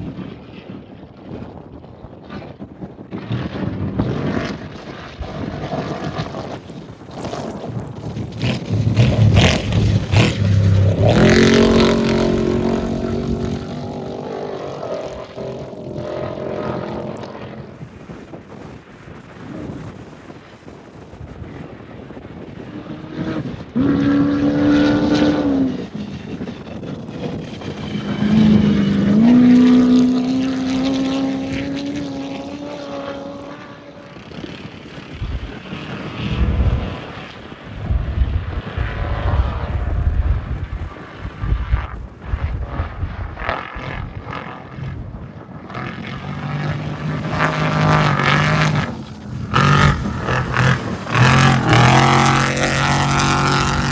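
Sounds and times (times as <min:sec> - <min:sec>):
race vehicle engines revving: 0:07.0 - 0:18.8, 0:22.6 - 0:34.6, 0:43.5 - 0:53.9
lower engine note: 0:07.2 - 0:19.9, 0:22.4 - 0:34.3, 0:35.2 - 0:53.9.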